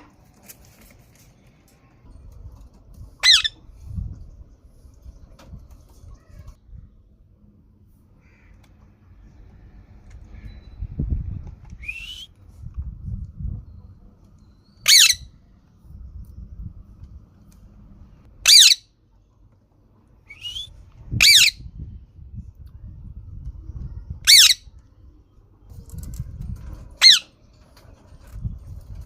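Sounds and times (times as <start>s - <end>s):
low rumbling noise: 1.9s - 29.0s
parrot squawking: 3.2s - 3.6s, 14.8s - 15.3s, 18.4s - 18.8s, 21.2s - 21.6s, 24.2s - 24.6s, 27.0s - 27.3s.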